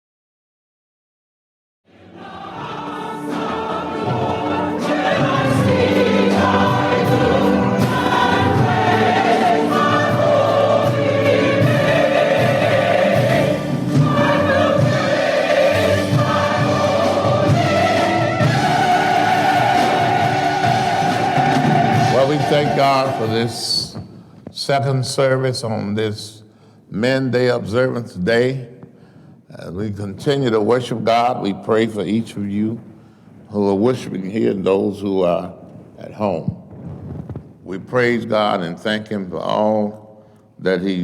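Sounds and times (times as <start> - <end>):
choir singing gospel music: 1.9 - 26.3, 29.9 - 36.4.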